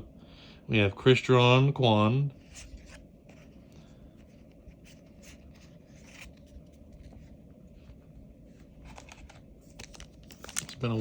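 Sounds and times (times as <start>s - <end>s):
cards sliding across each other: 2.4s - 7.2s.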